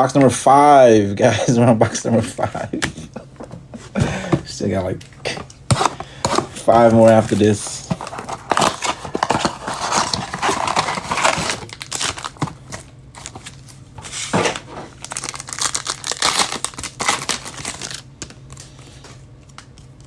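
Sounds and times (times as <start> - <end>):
packaging crinkling and tearing: 5.7 - 20.0.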